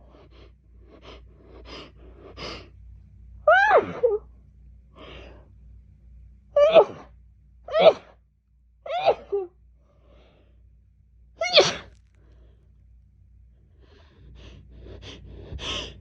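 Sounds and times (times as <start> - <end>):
woman sneezing: 11.4 - 11.9.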